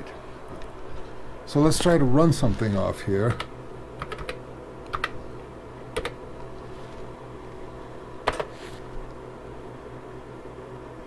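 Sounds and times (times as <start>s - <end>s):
computer running hum: 0.0s - 11.0s
keyboard keystrokes: 2.6s - 5.2s, 6.0s - 6.6s, 8.2s - 8.5s.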